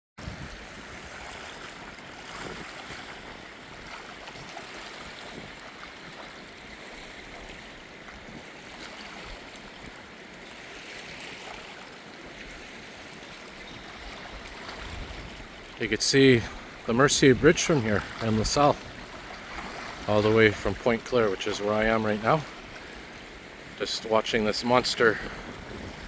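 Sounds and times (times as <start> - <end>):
small waves washing on shore: 0.2 - 26.0
wind: 0.2 - 26.0.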